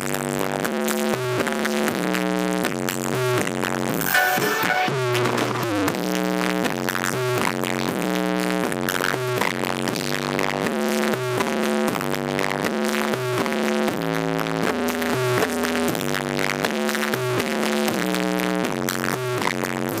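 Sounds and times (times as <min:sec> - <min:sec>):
electronic dance music: 0:03.9 - 0:06.3.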